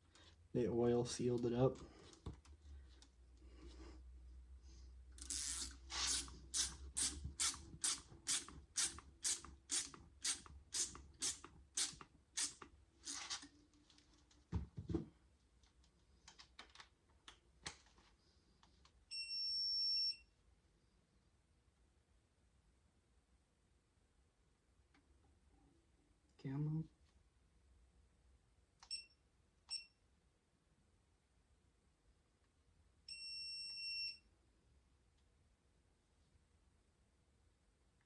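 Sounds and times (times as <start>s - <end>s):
hand ratchet clicking: 5.2s - 13.4s.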